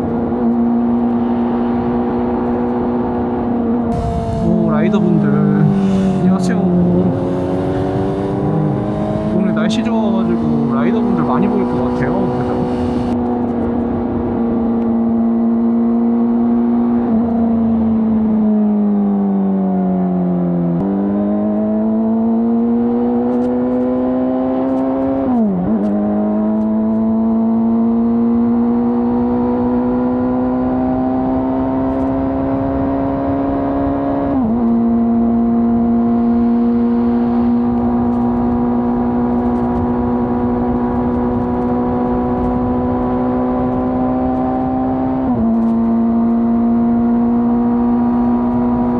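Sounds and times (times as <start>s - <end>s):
motorcycle engine revving while riding: 0.0s - 48.9s.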